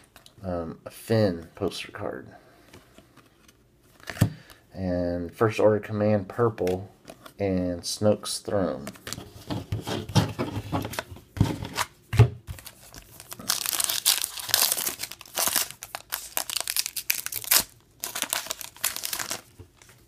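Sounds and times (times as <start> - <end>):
wrapper tearing and crinkling: 12.6 - 20.0.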